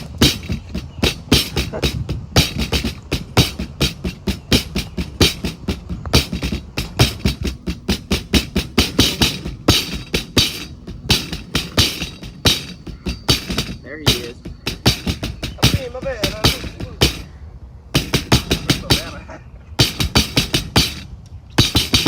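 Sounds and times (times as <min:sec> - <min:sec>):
fast percussive beat: 0:00.0 - 0:17.3, 0:18.0 - 0:19.2, 0:19.8 - 0:22.0
constant bass: 0:00.0 - 0:22.0.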